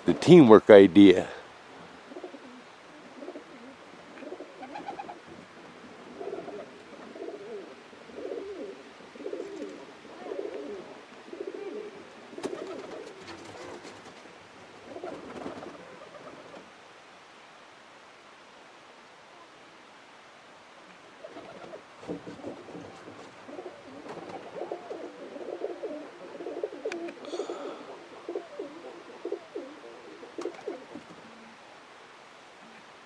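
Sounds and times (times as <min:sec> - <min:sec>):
pigeons cooing: 0:01.8 - 0:14.2, 0:14.8 - 0:16.7, 0:21.2 - 0:31.6.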